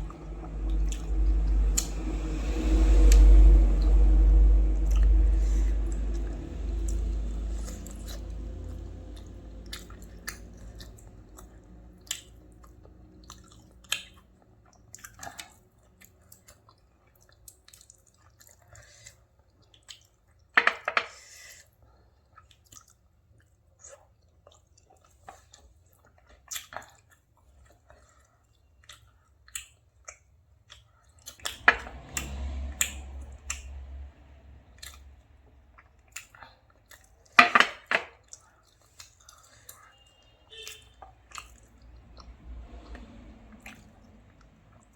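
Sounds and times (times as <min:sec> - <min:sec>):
chewing and mouth smacks: 0:00.0 - 0:02.4, 0:04.8 - 0:20.5, 0:21.6 - 0:34.1, 0:34.7 - 0:37.4, 0:38.2 - 0:44.9
low rumble: 0:00.0 - 0:14.0, 0:31.4 - 0:36.5.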